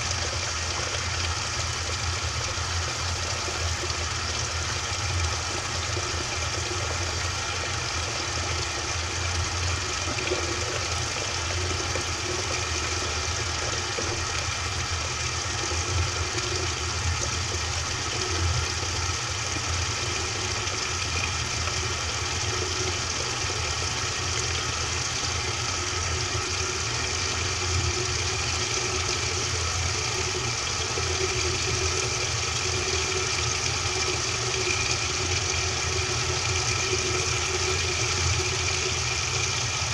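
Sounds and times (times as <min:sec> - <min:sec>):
washing machine running: 0:00.0 - 0:39.9.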